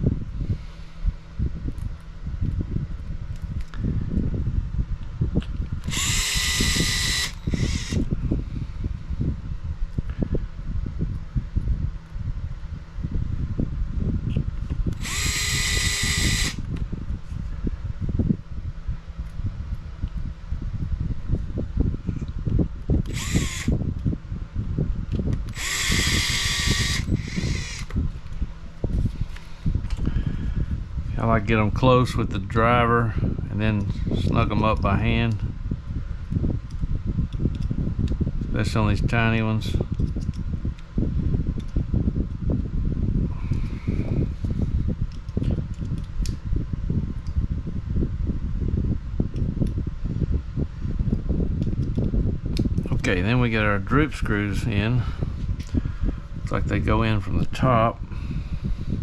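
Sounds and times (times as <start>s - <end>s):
fan humming: 0.0s - 59.0s
cordless screwdriver whirring: 5.8s - 8.1s, 14.9s - 16.7s, 23.0s - 23.8s, 25.1s - 28.0s
small plastic parts clicking: 39.9s - 40.4s.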